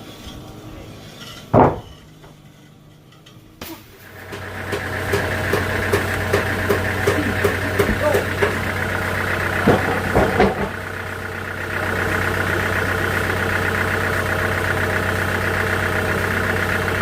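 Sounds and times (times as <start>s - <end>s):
engine running: 0.0s - 17.0s
loud knock: 1.5s - 1.9s.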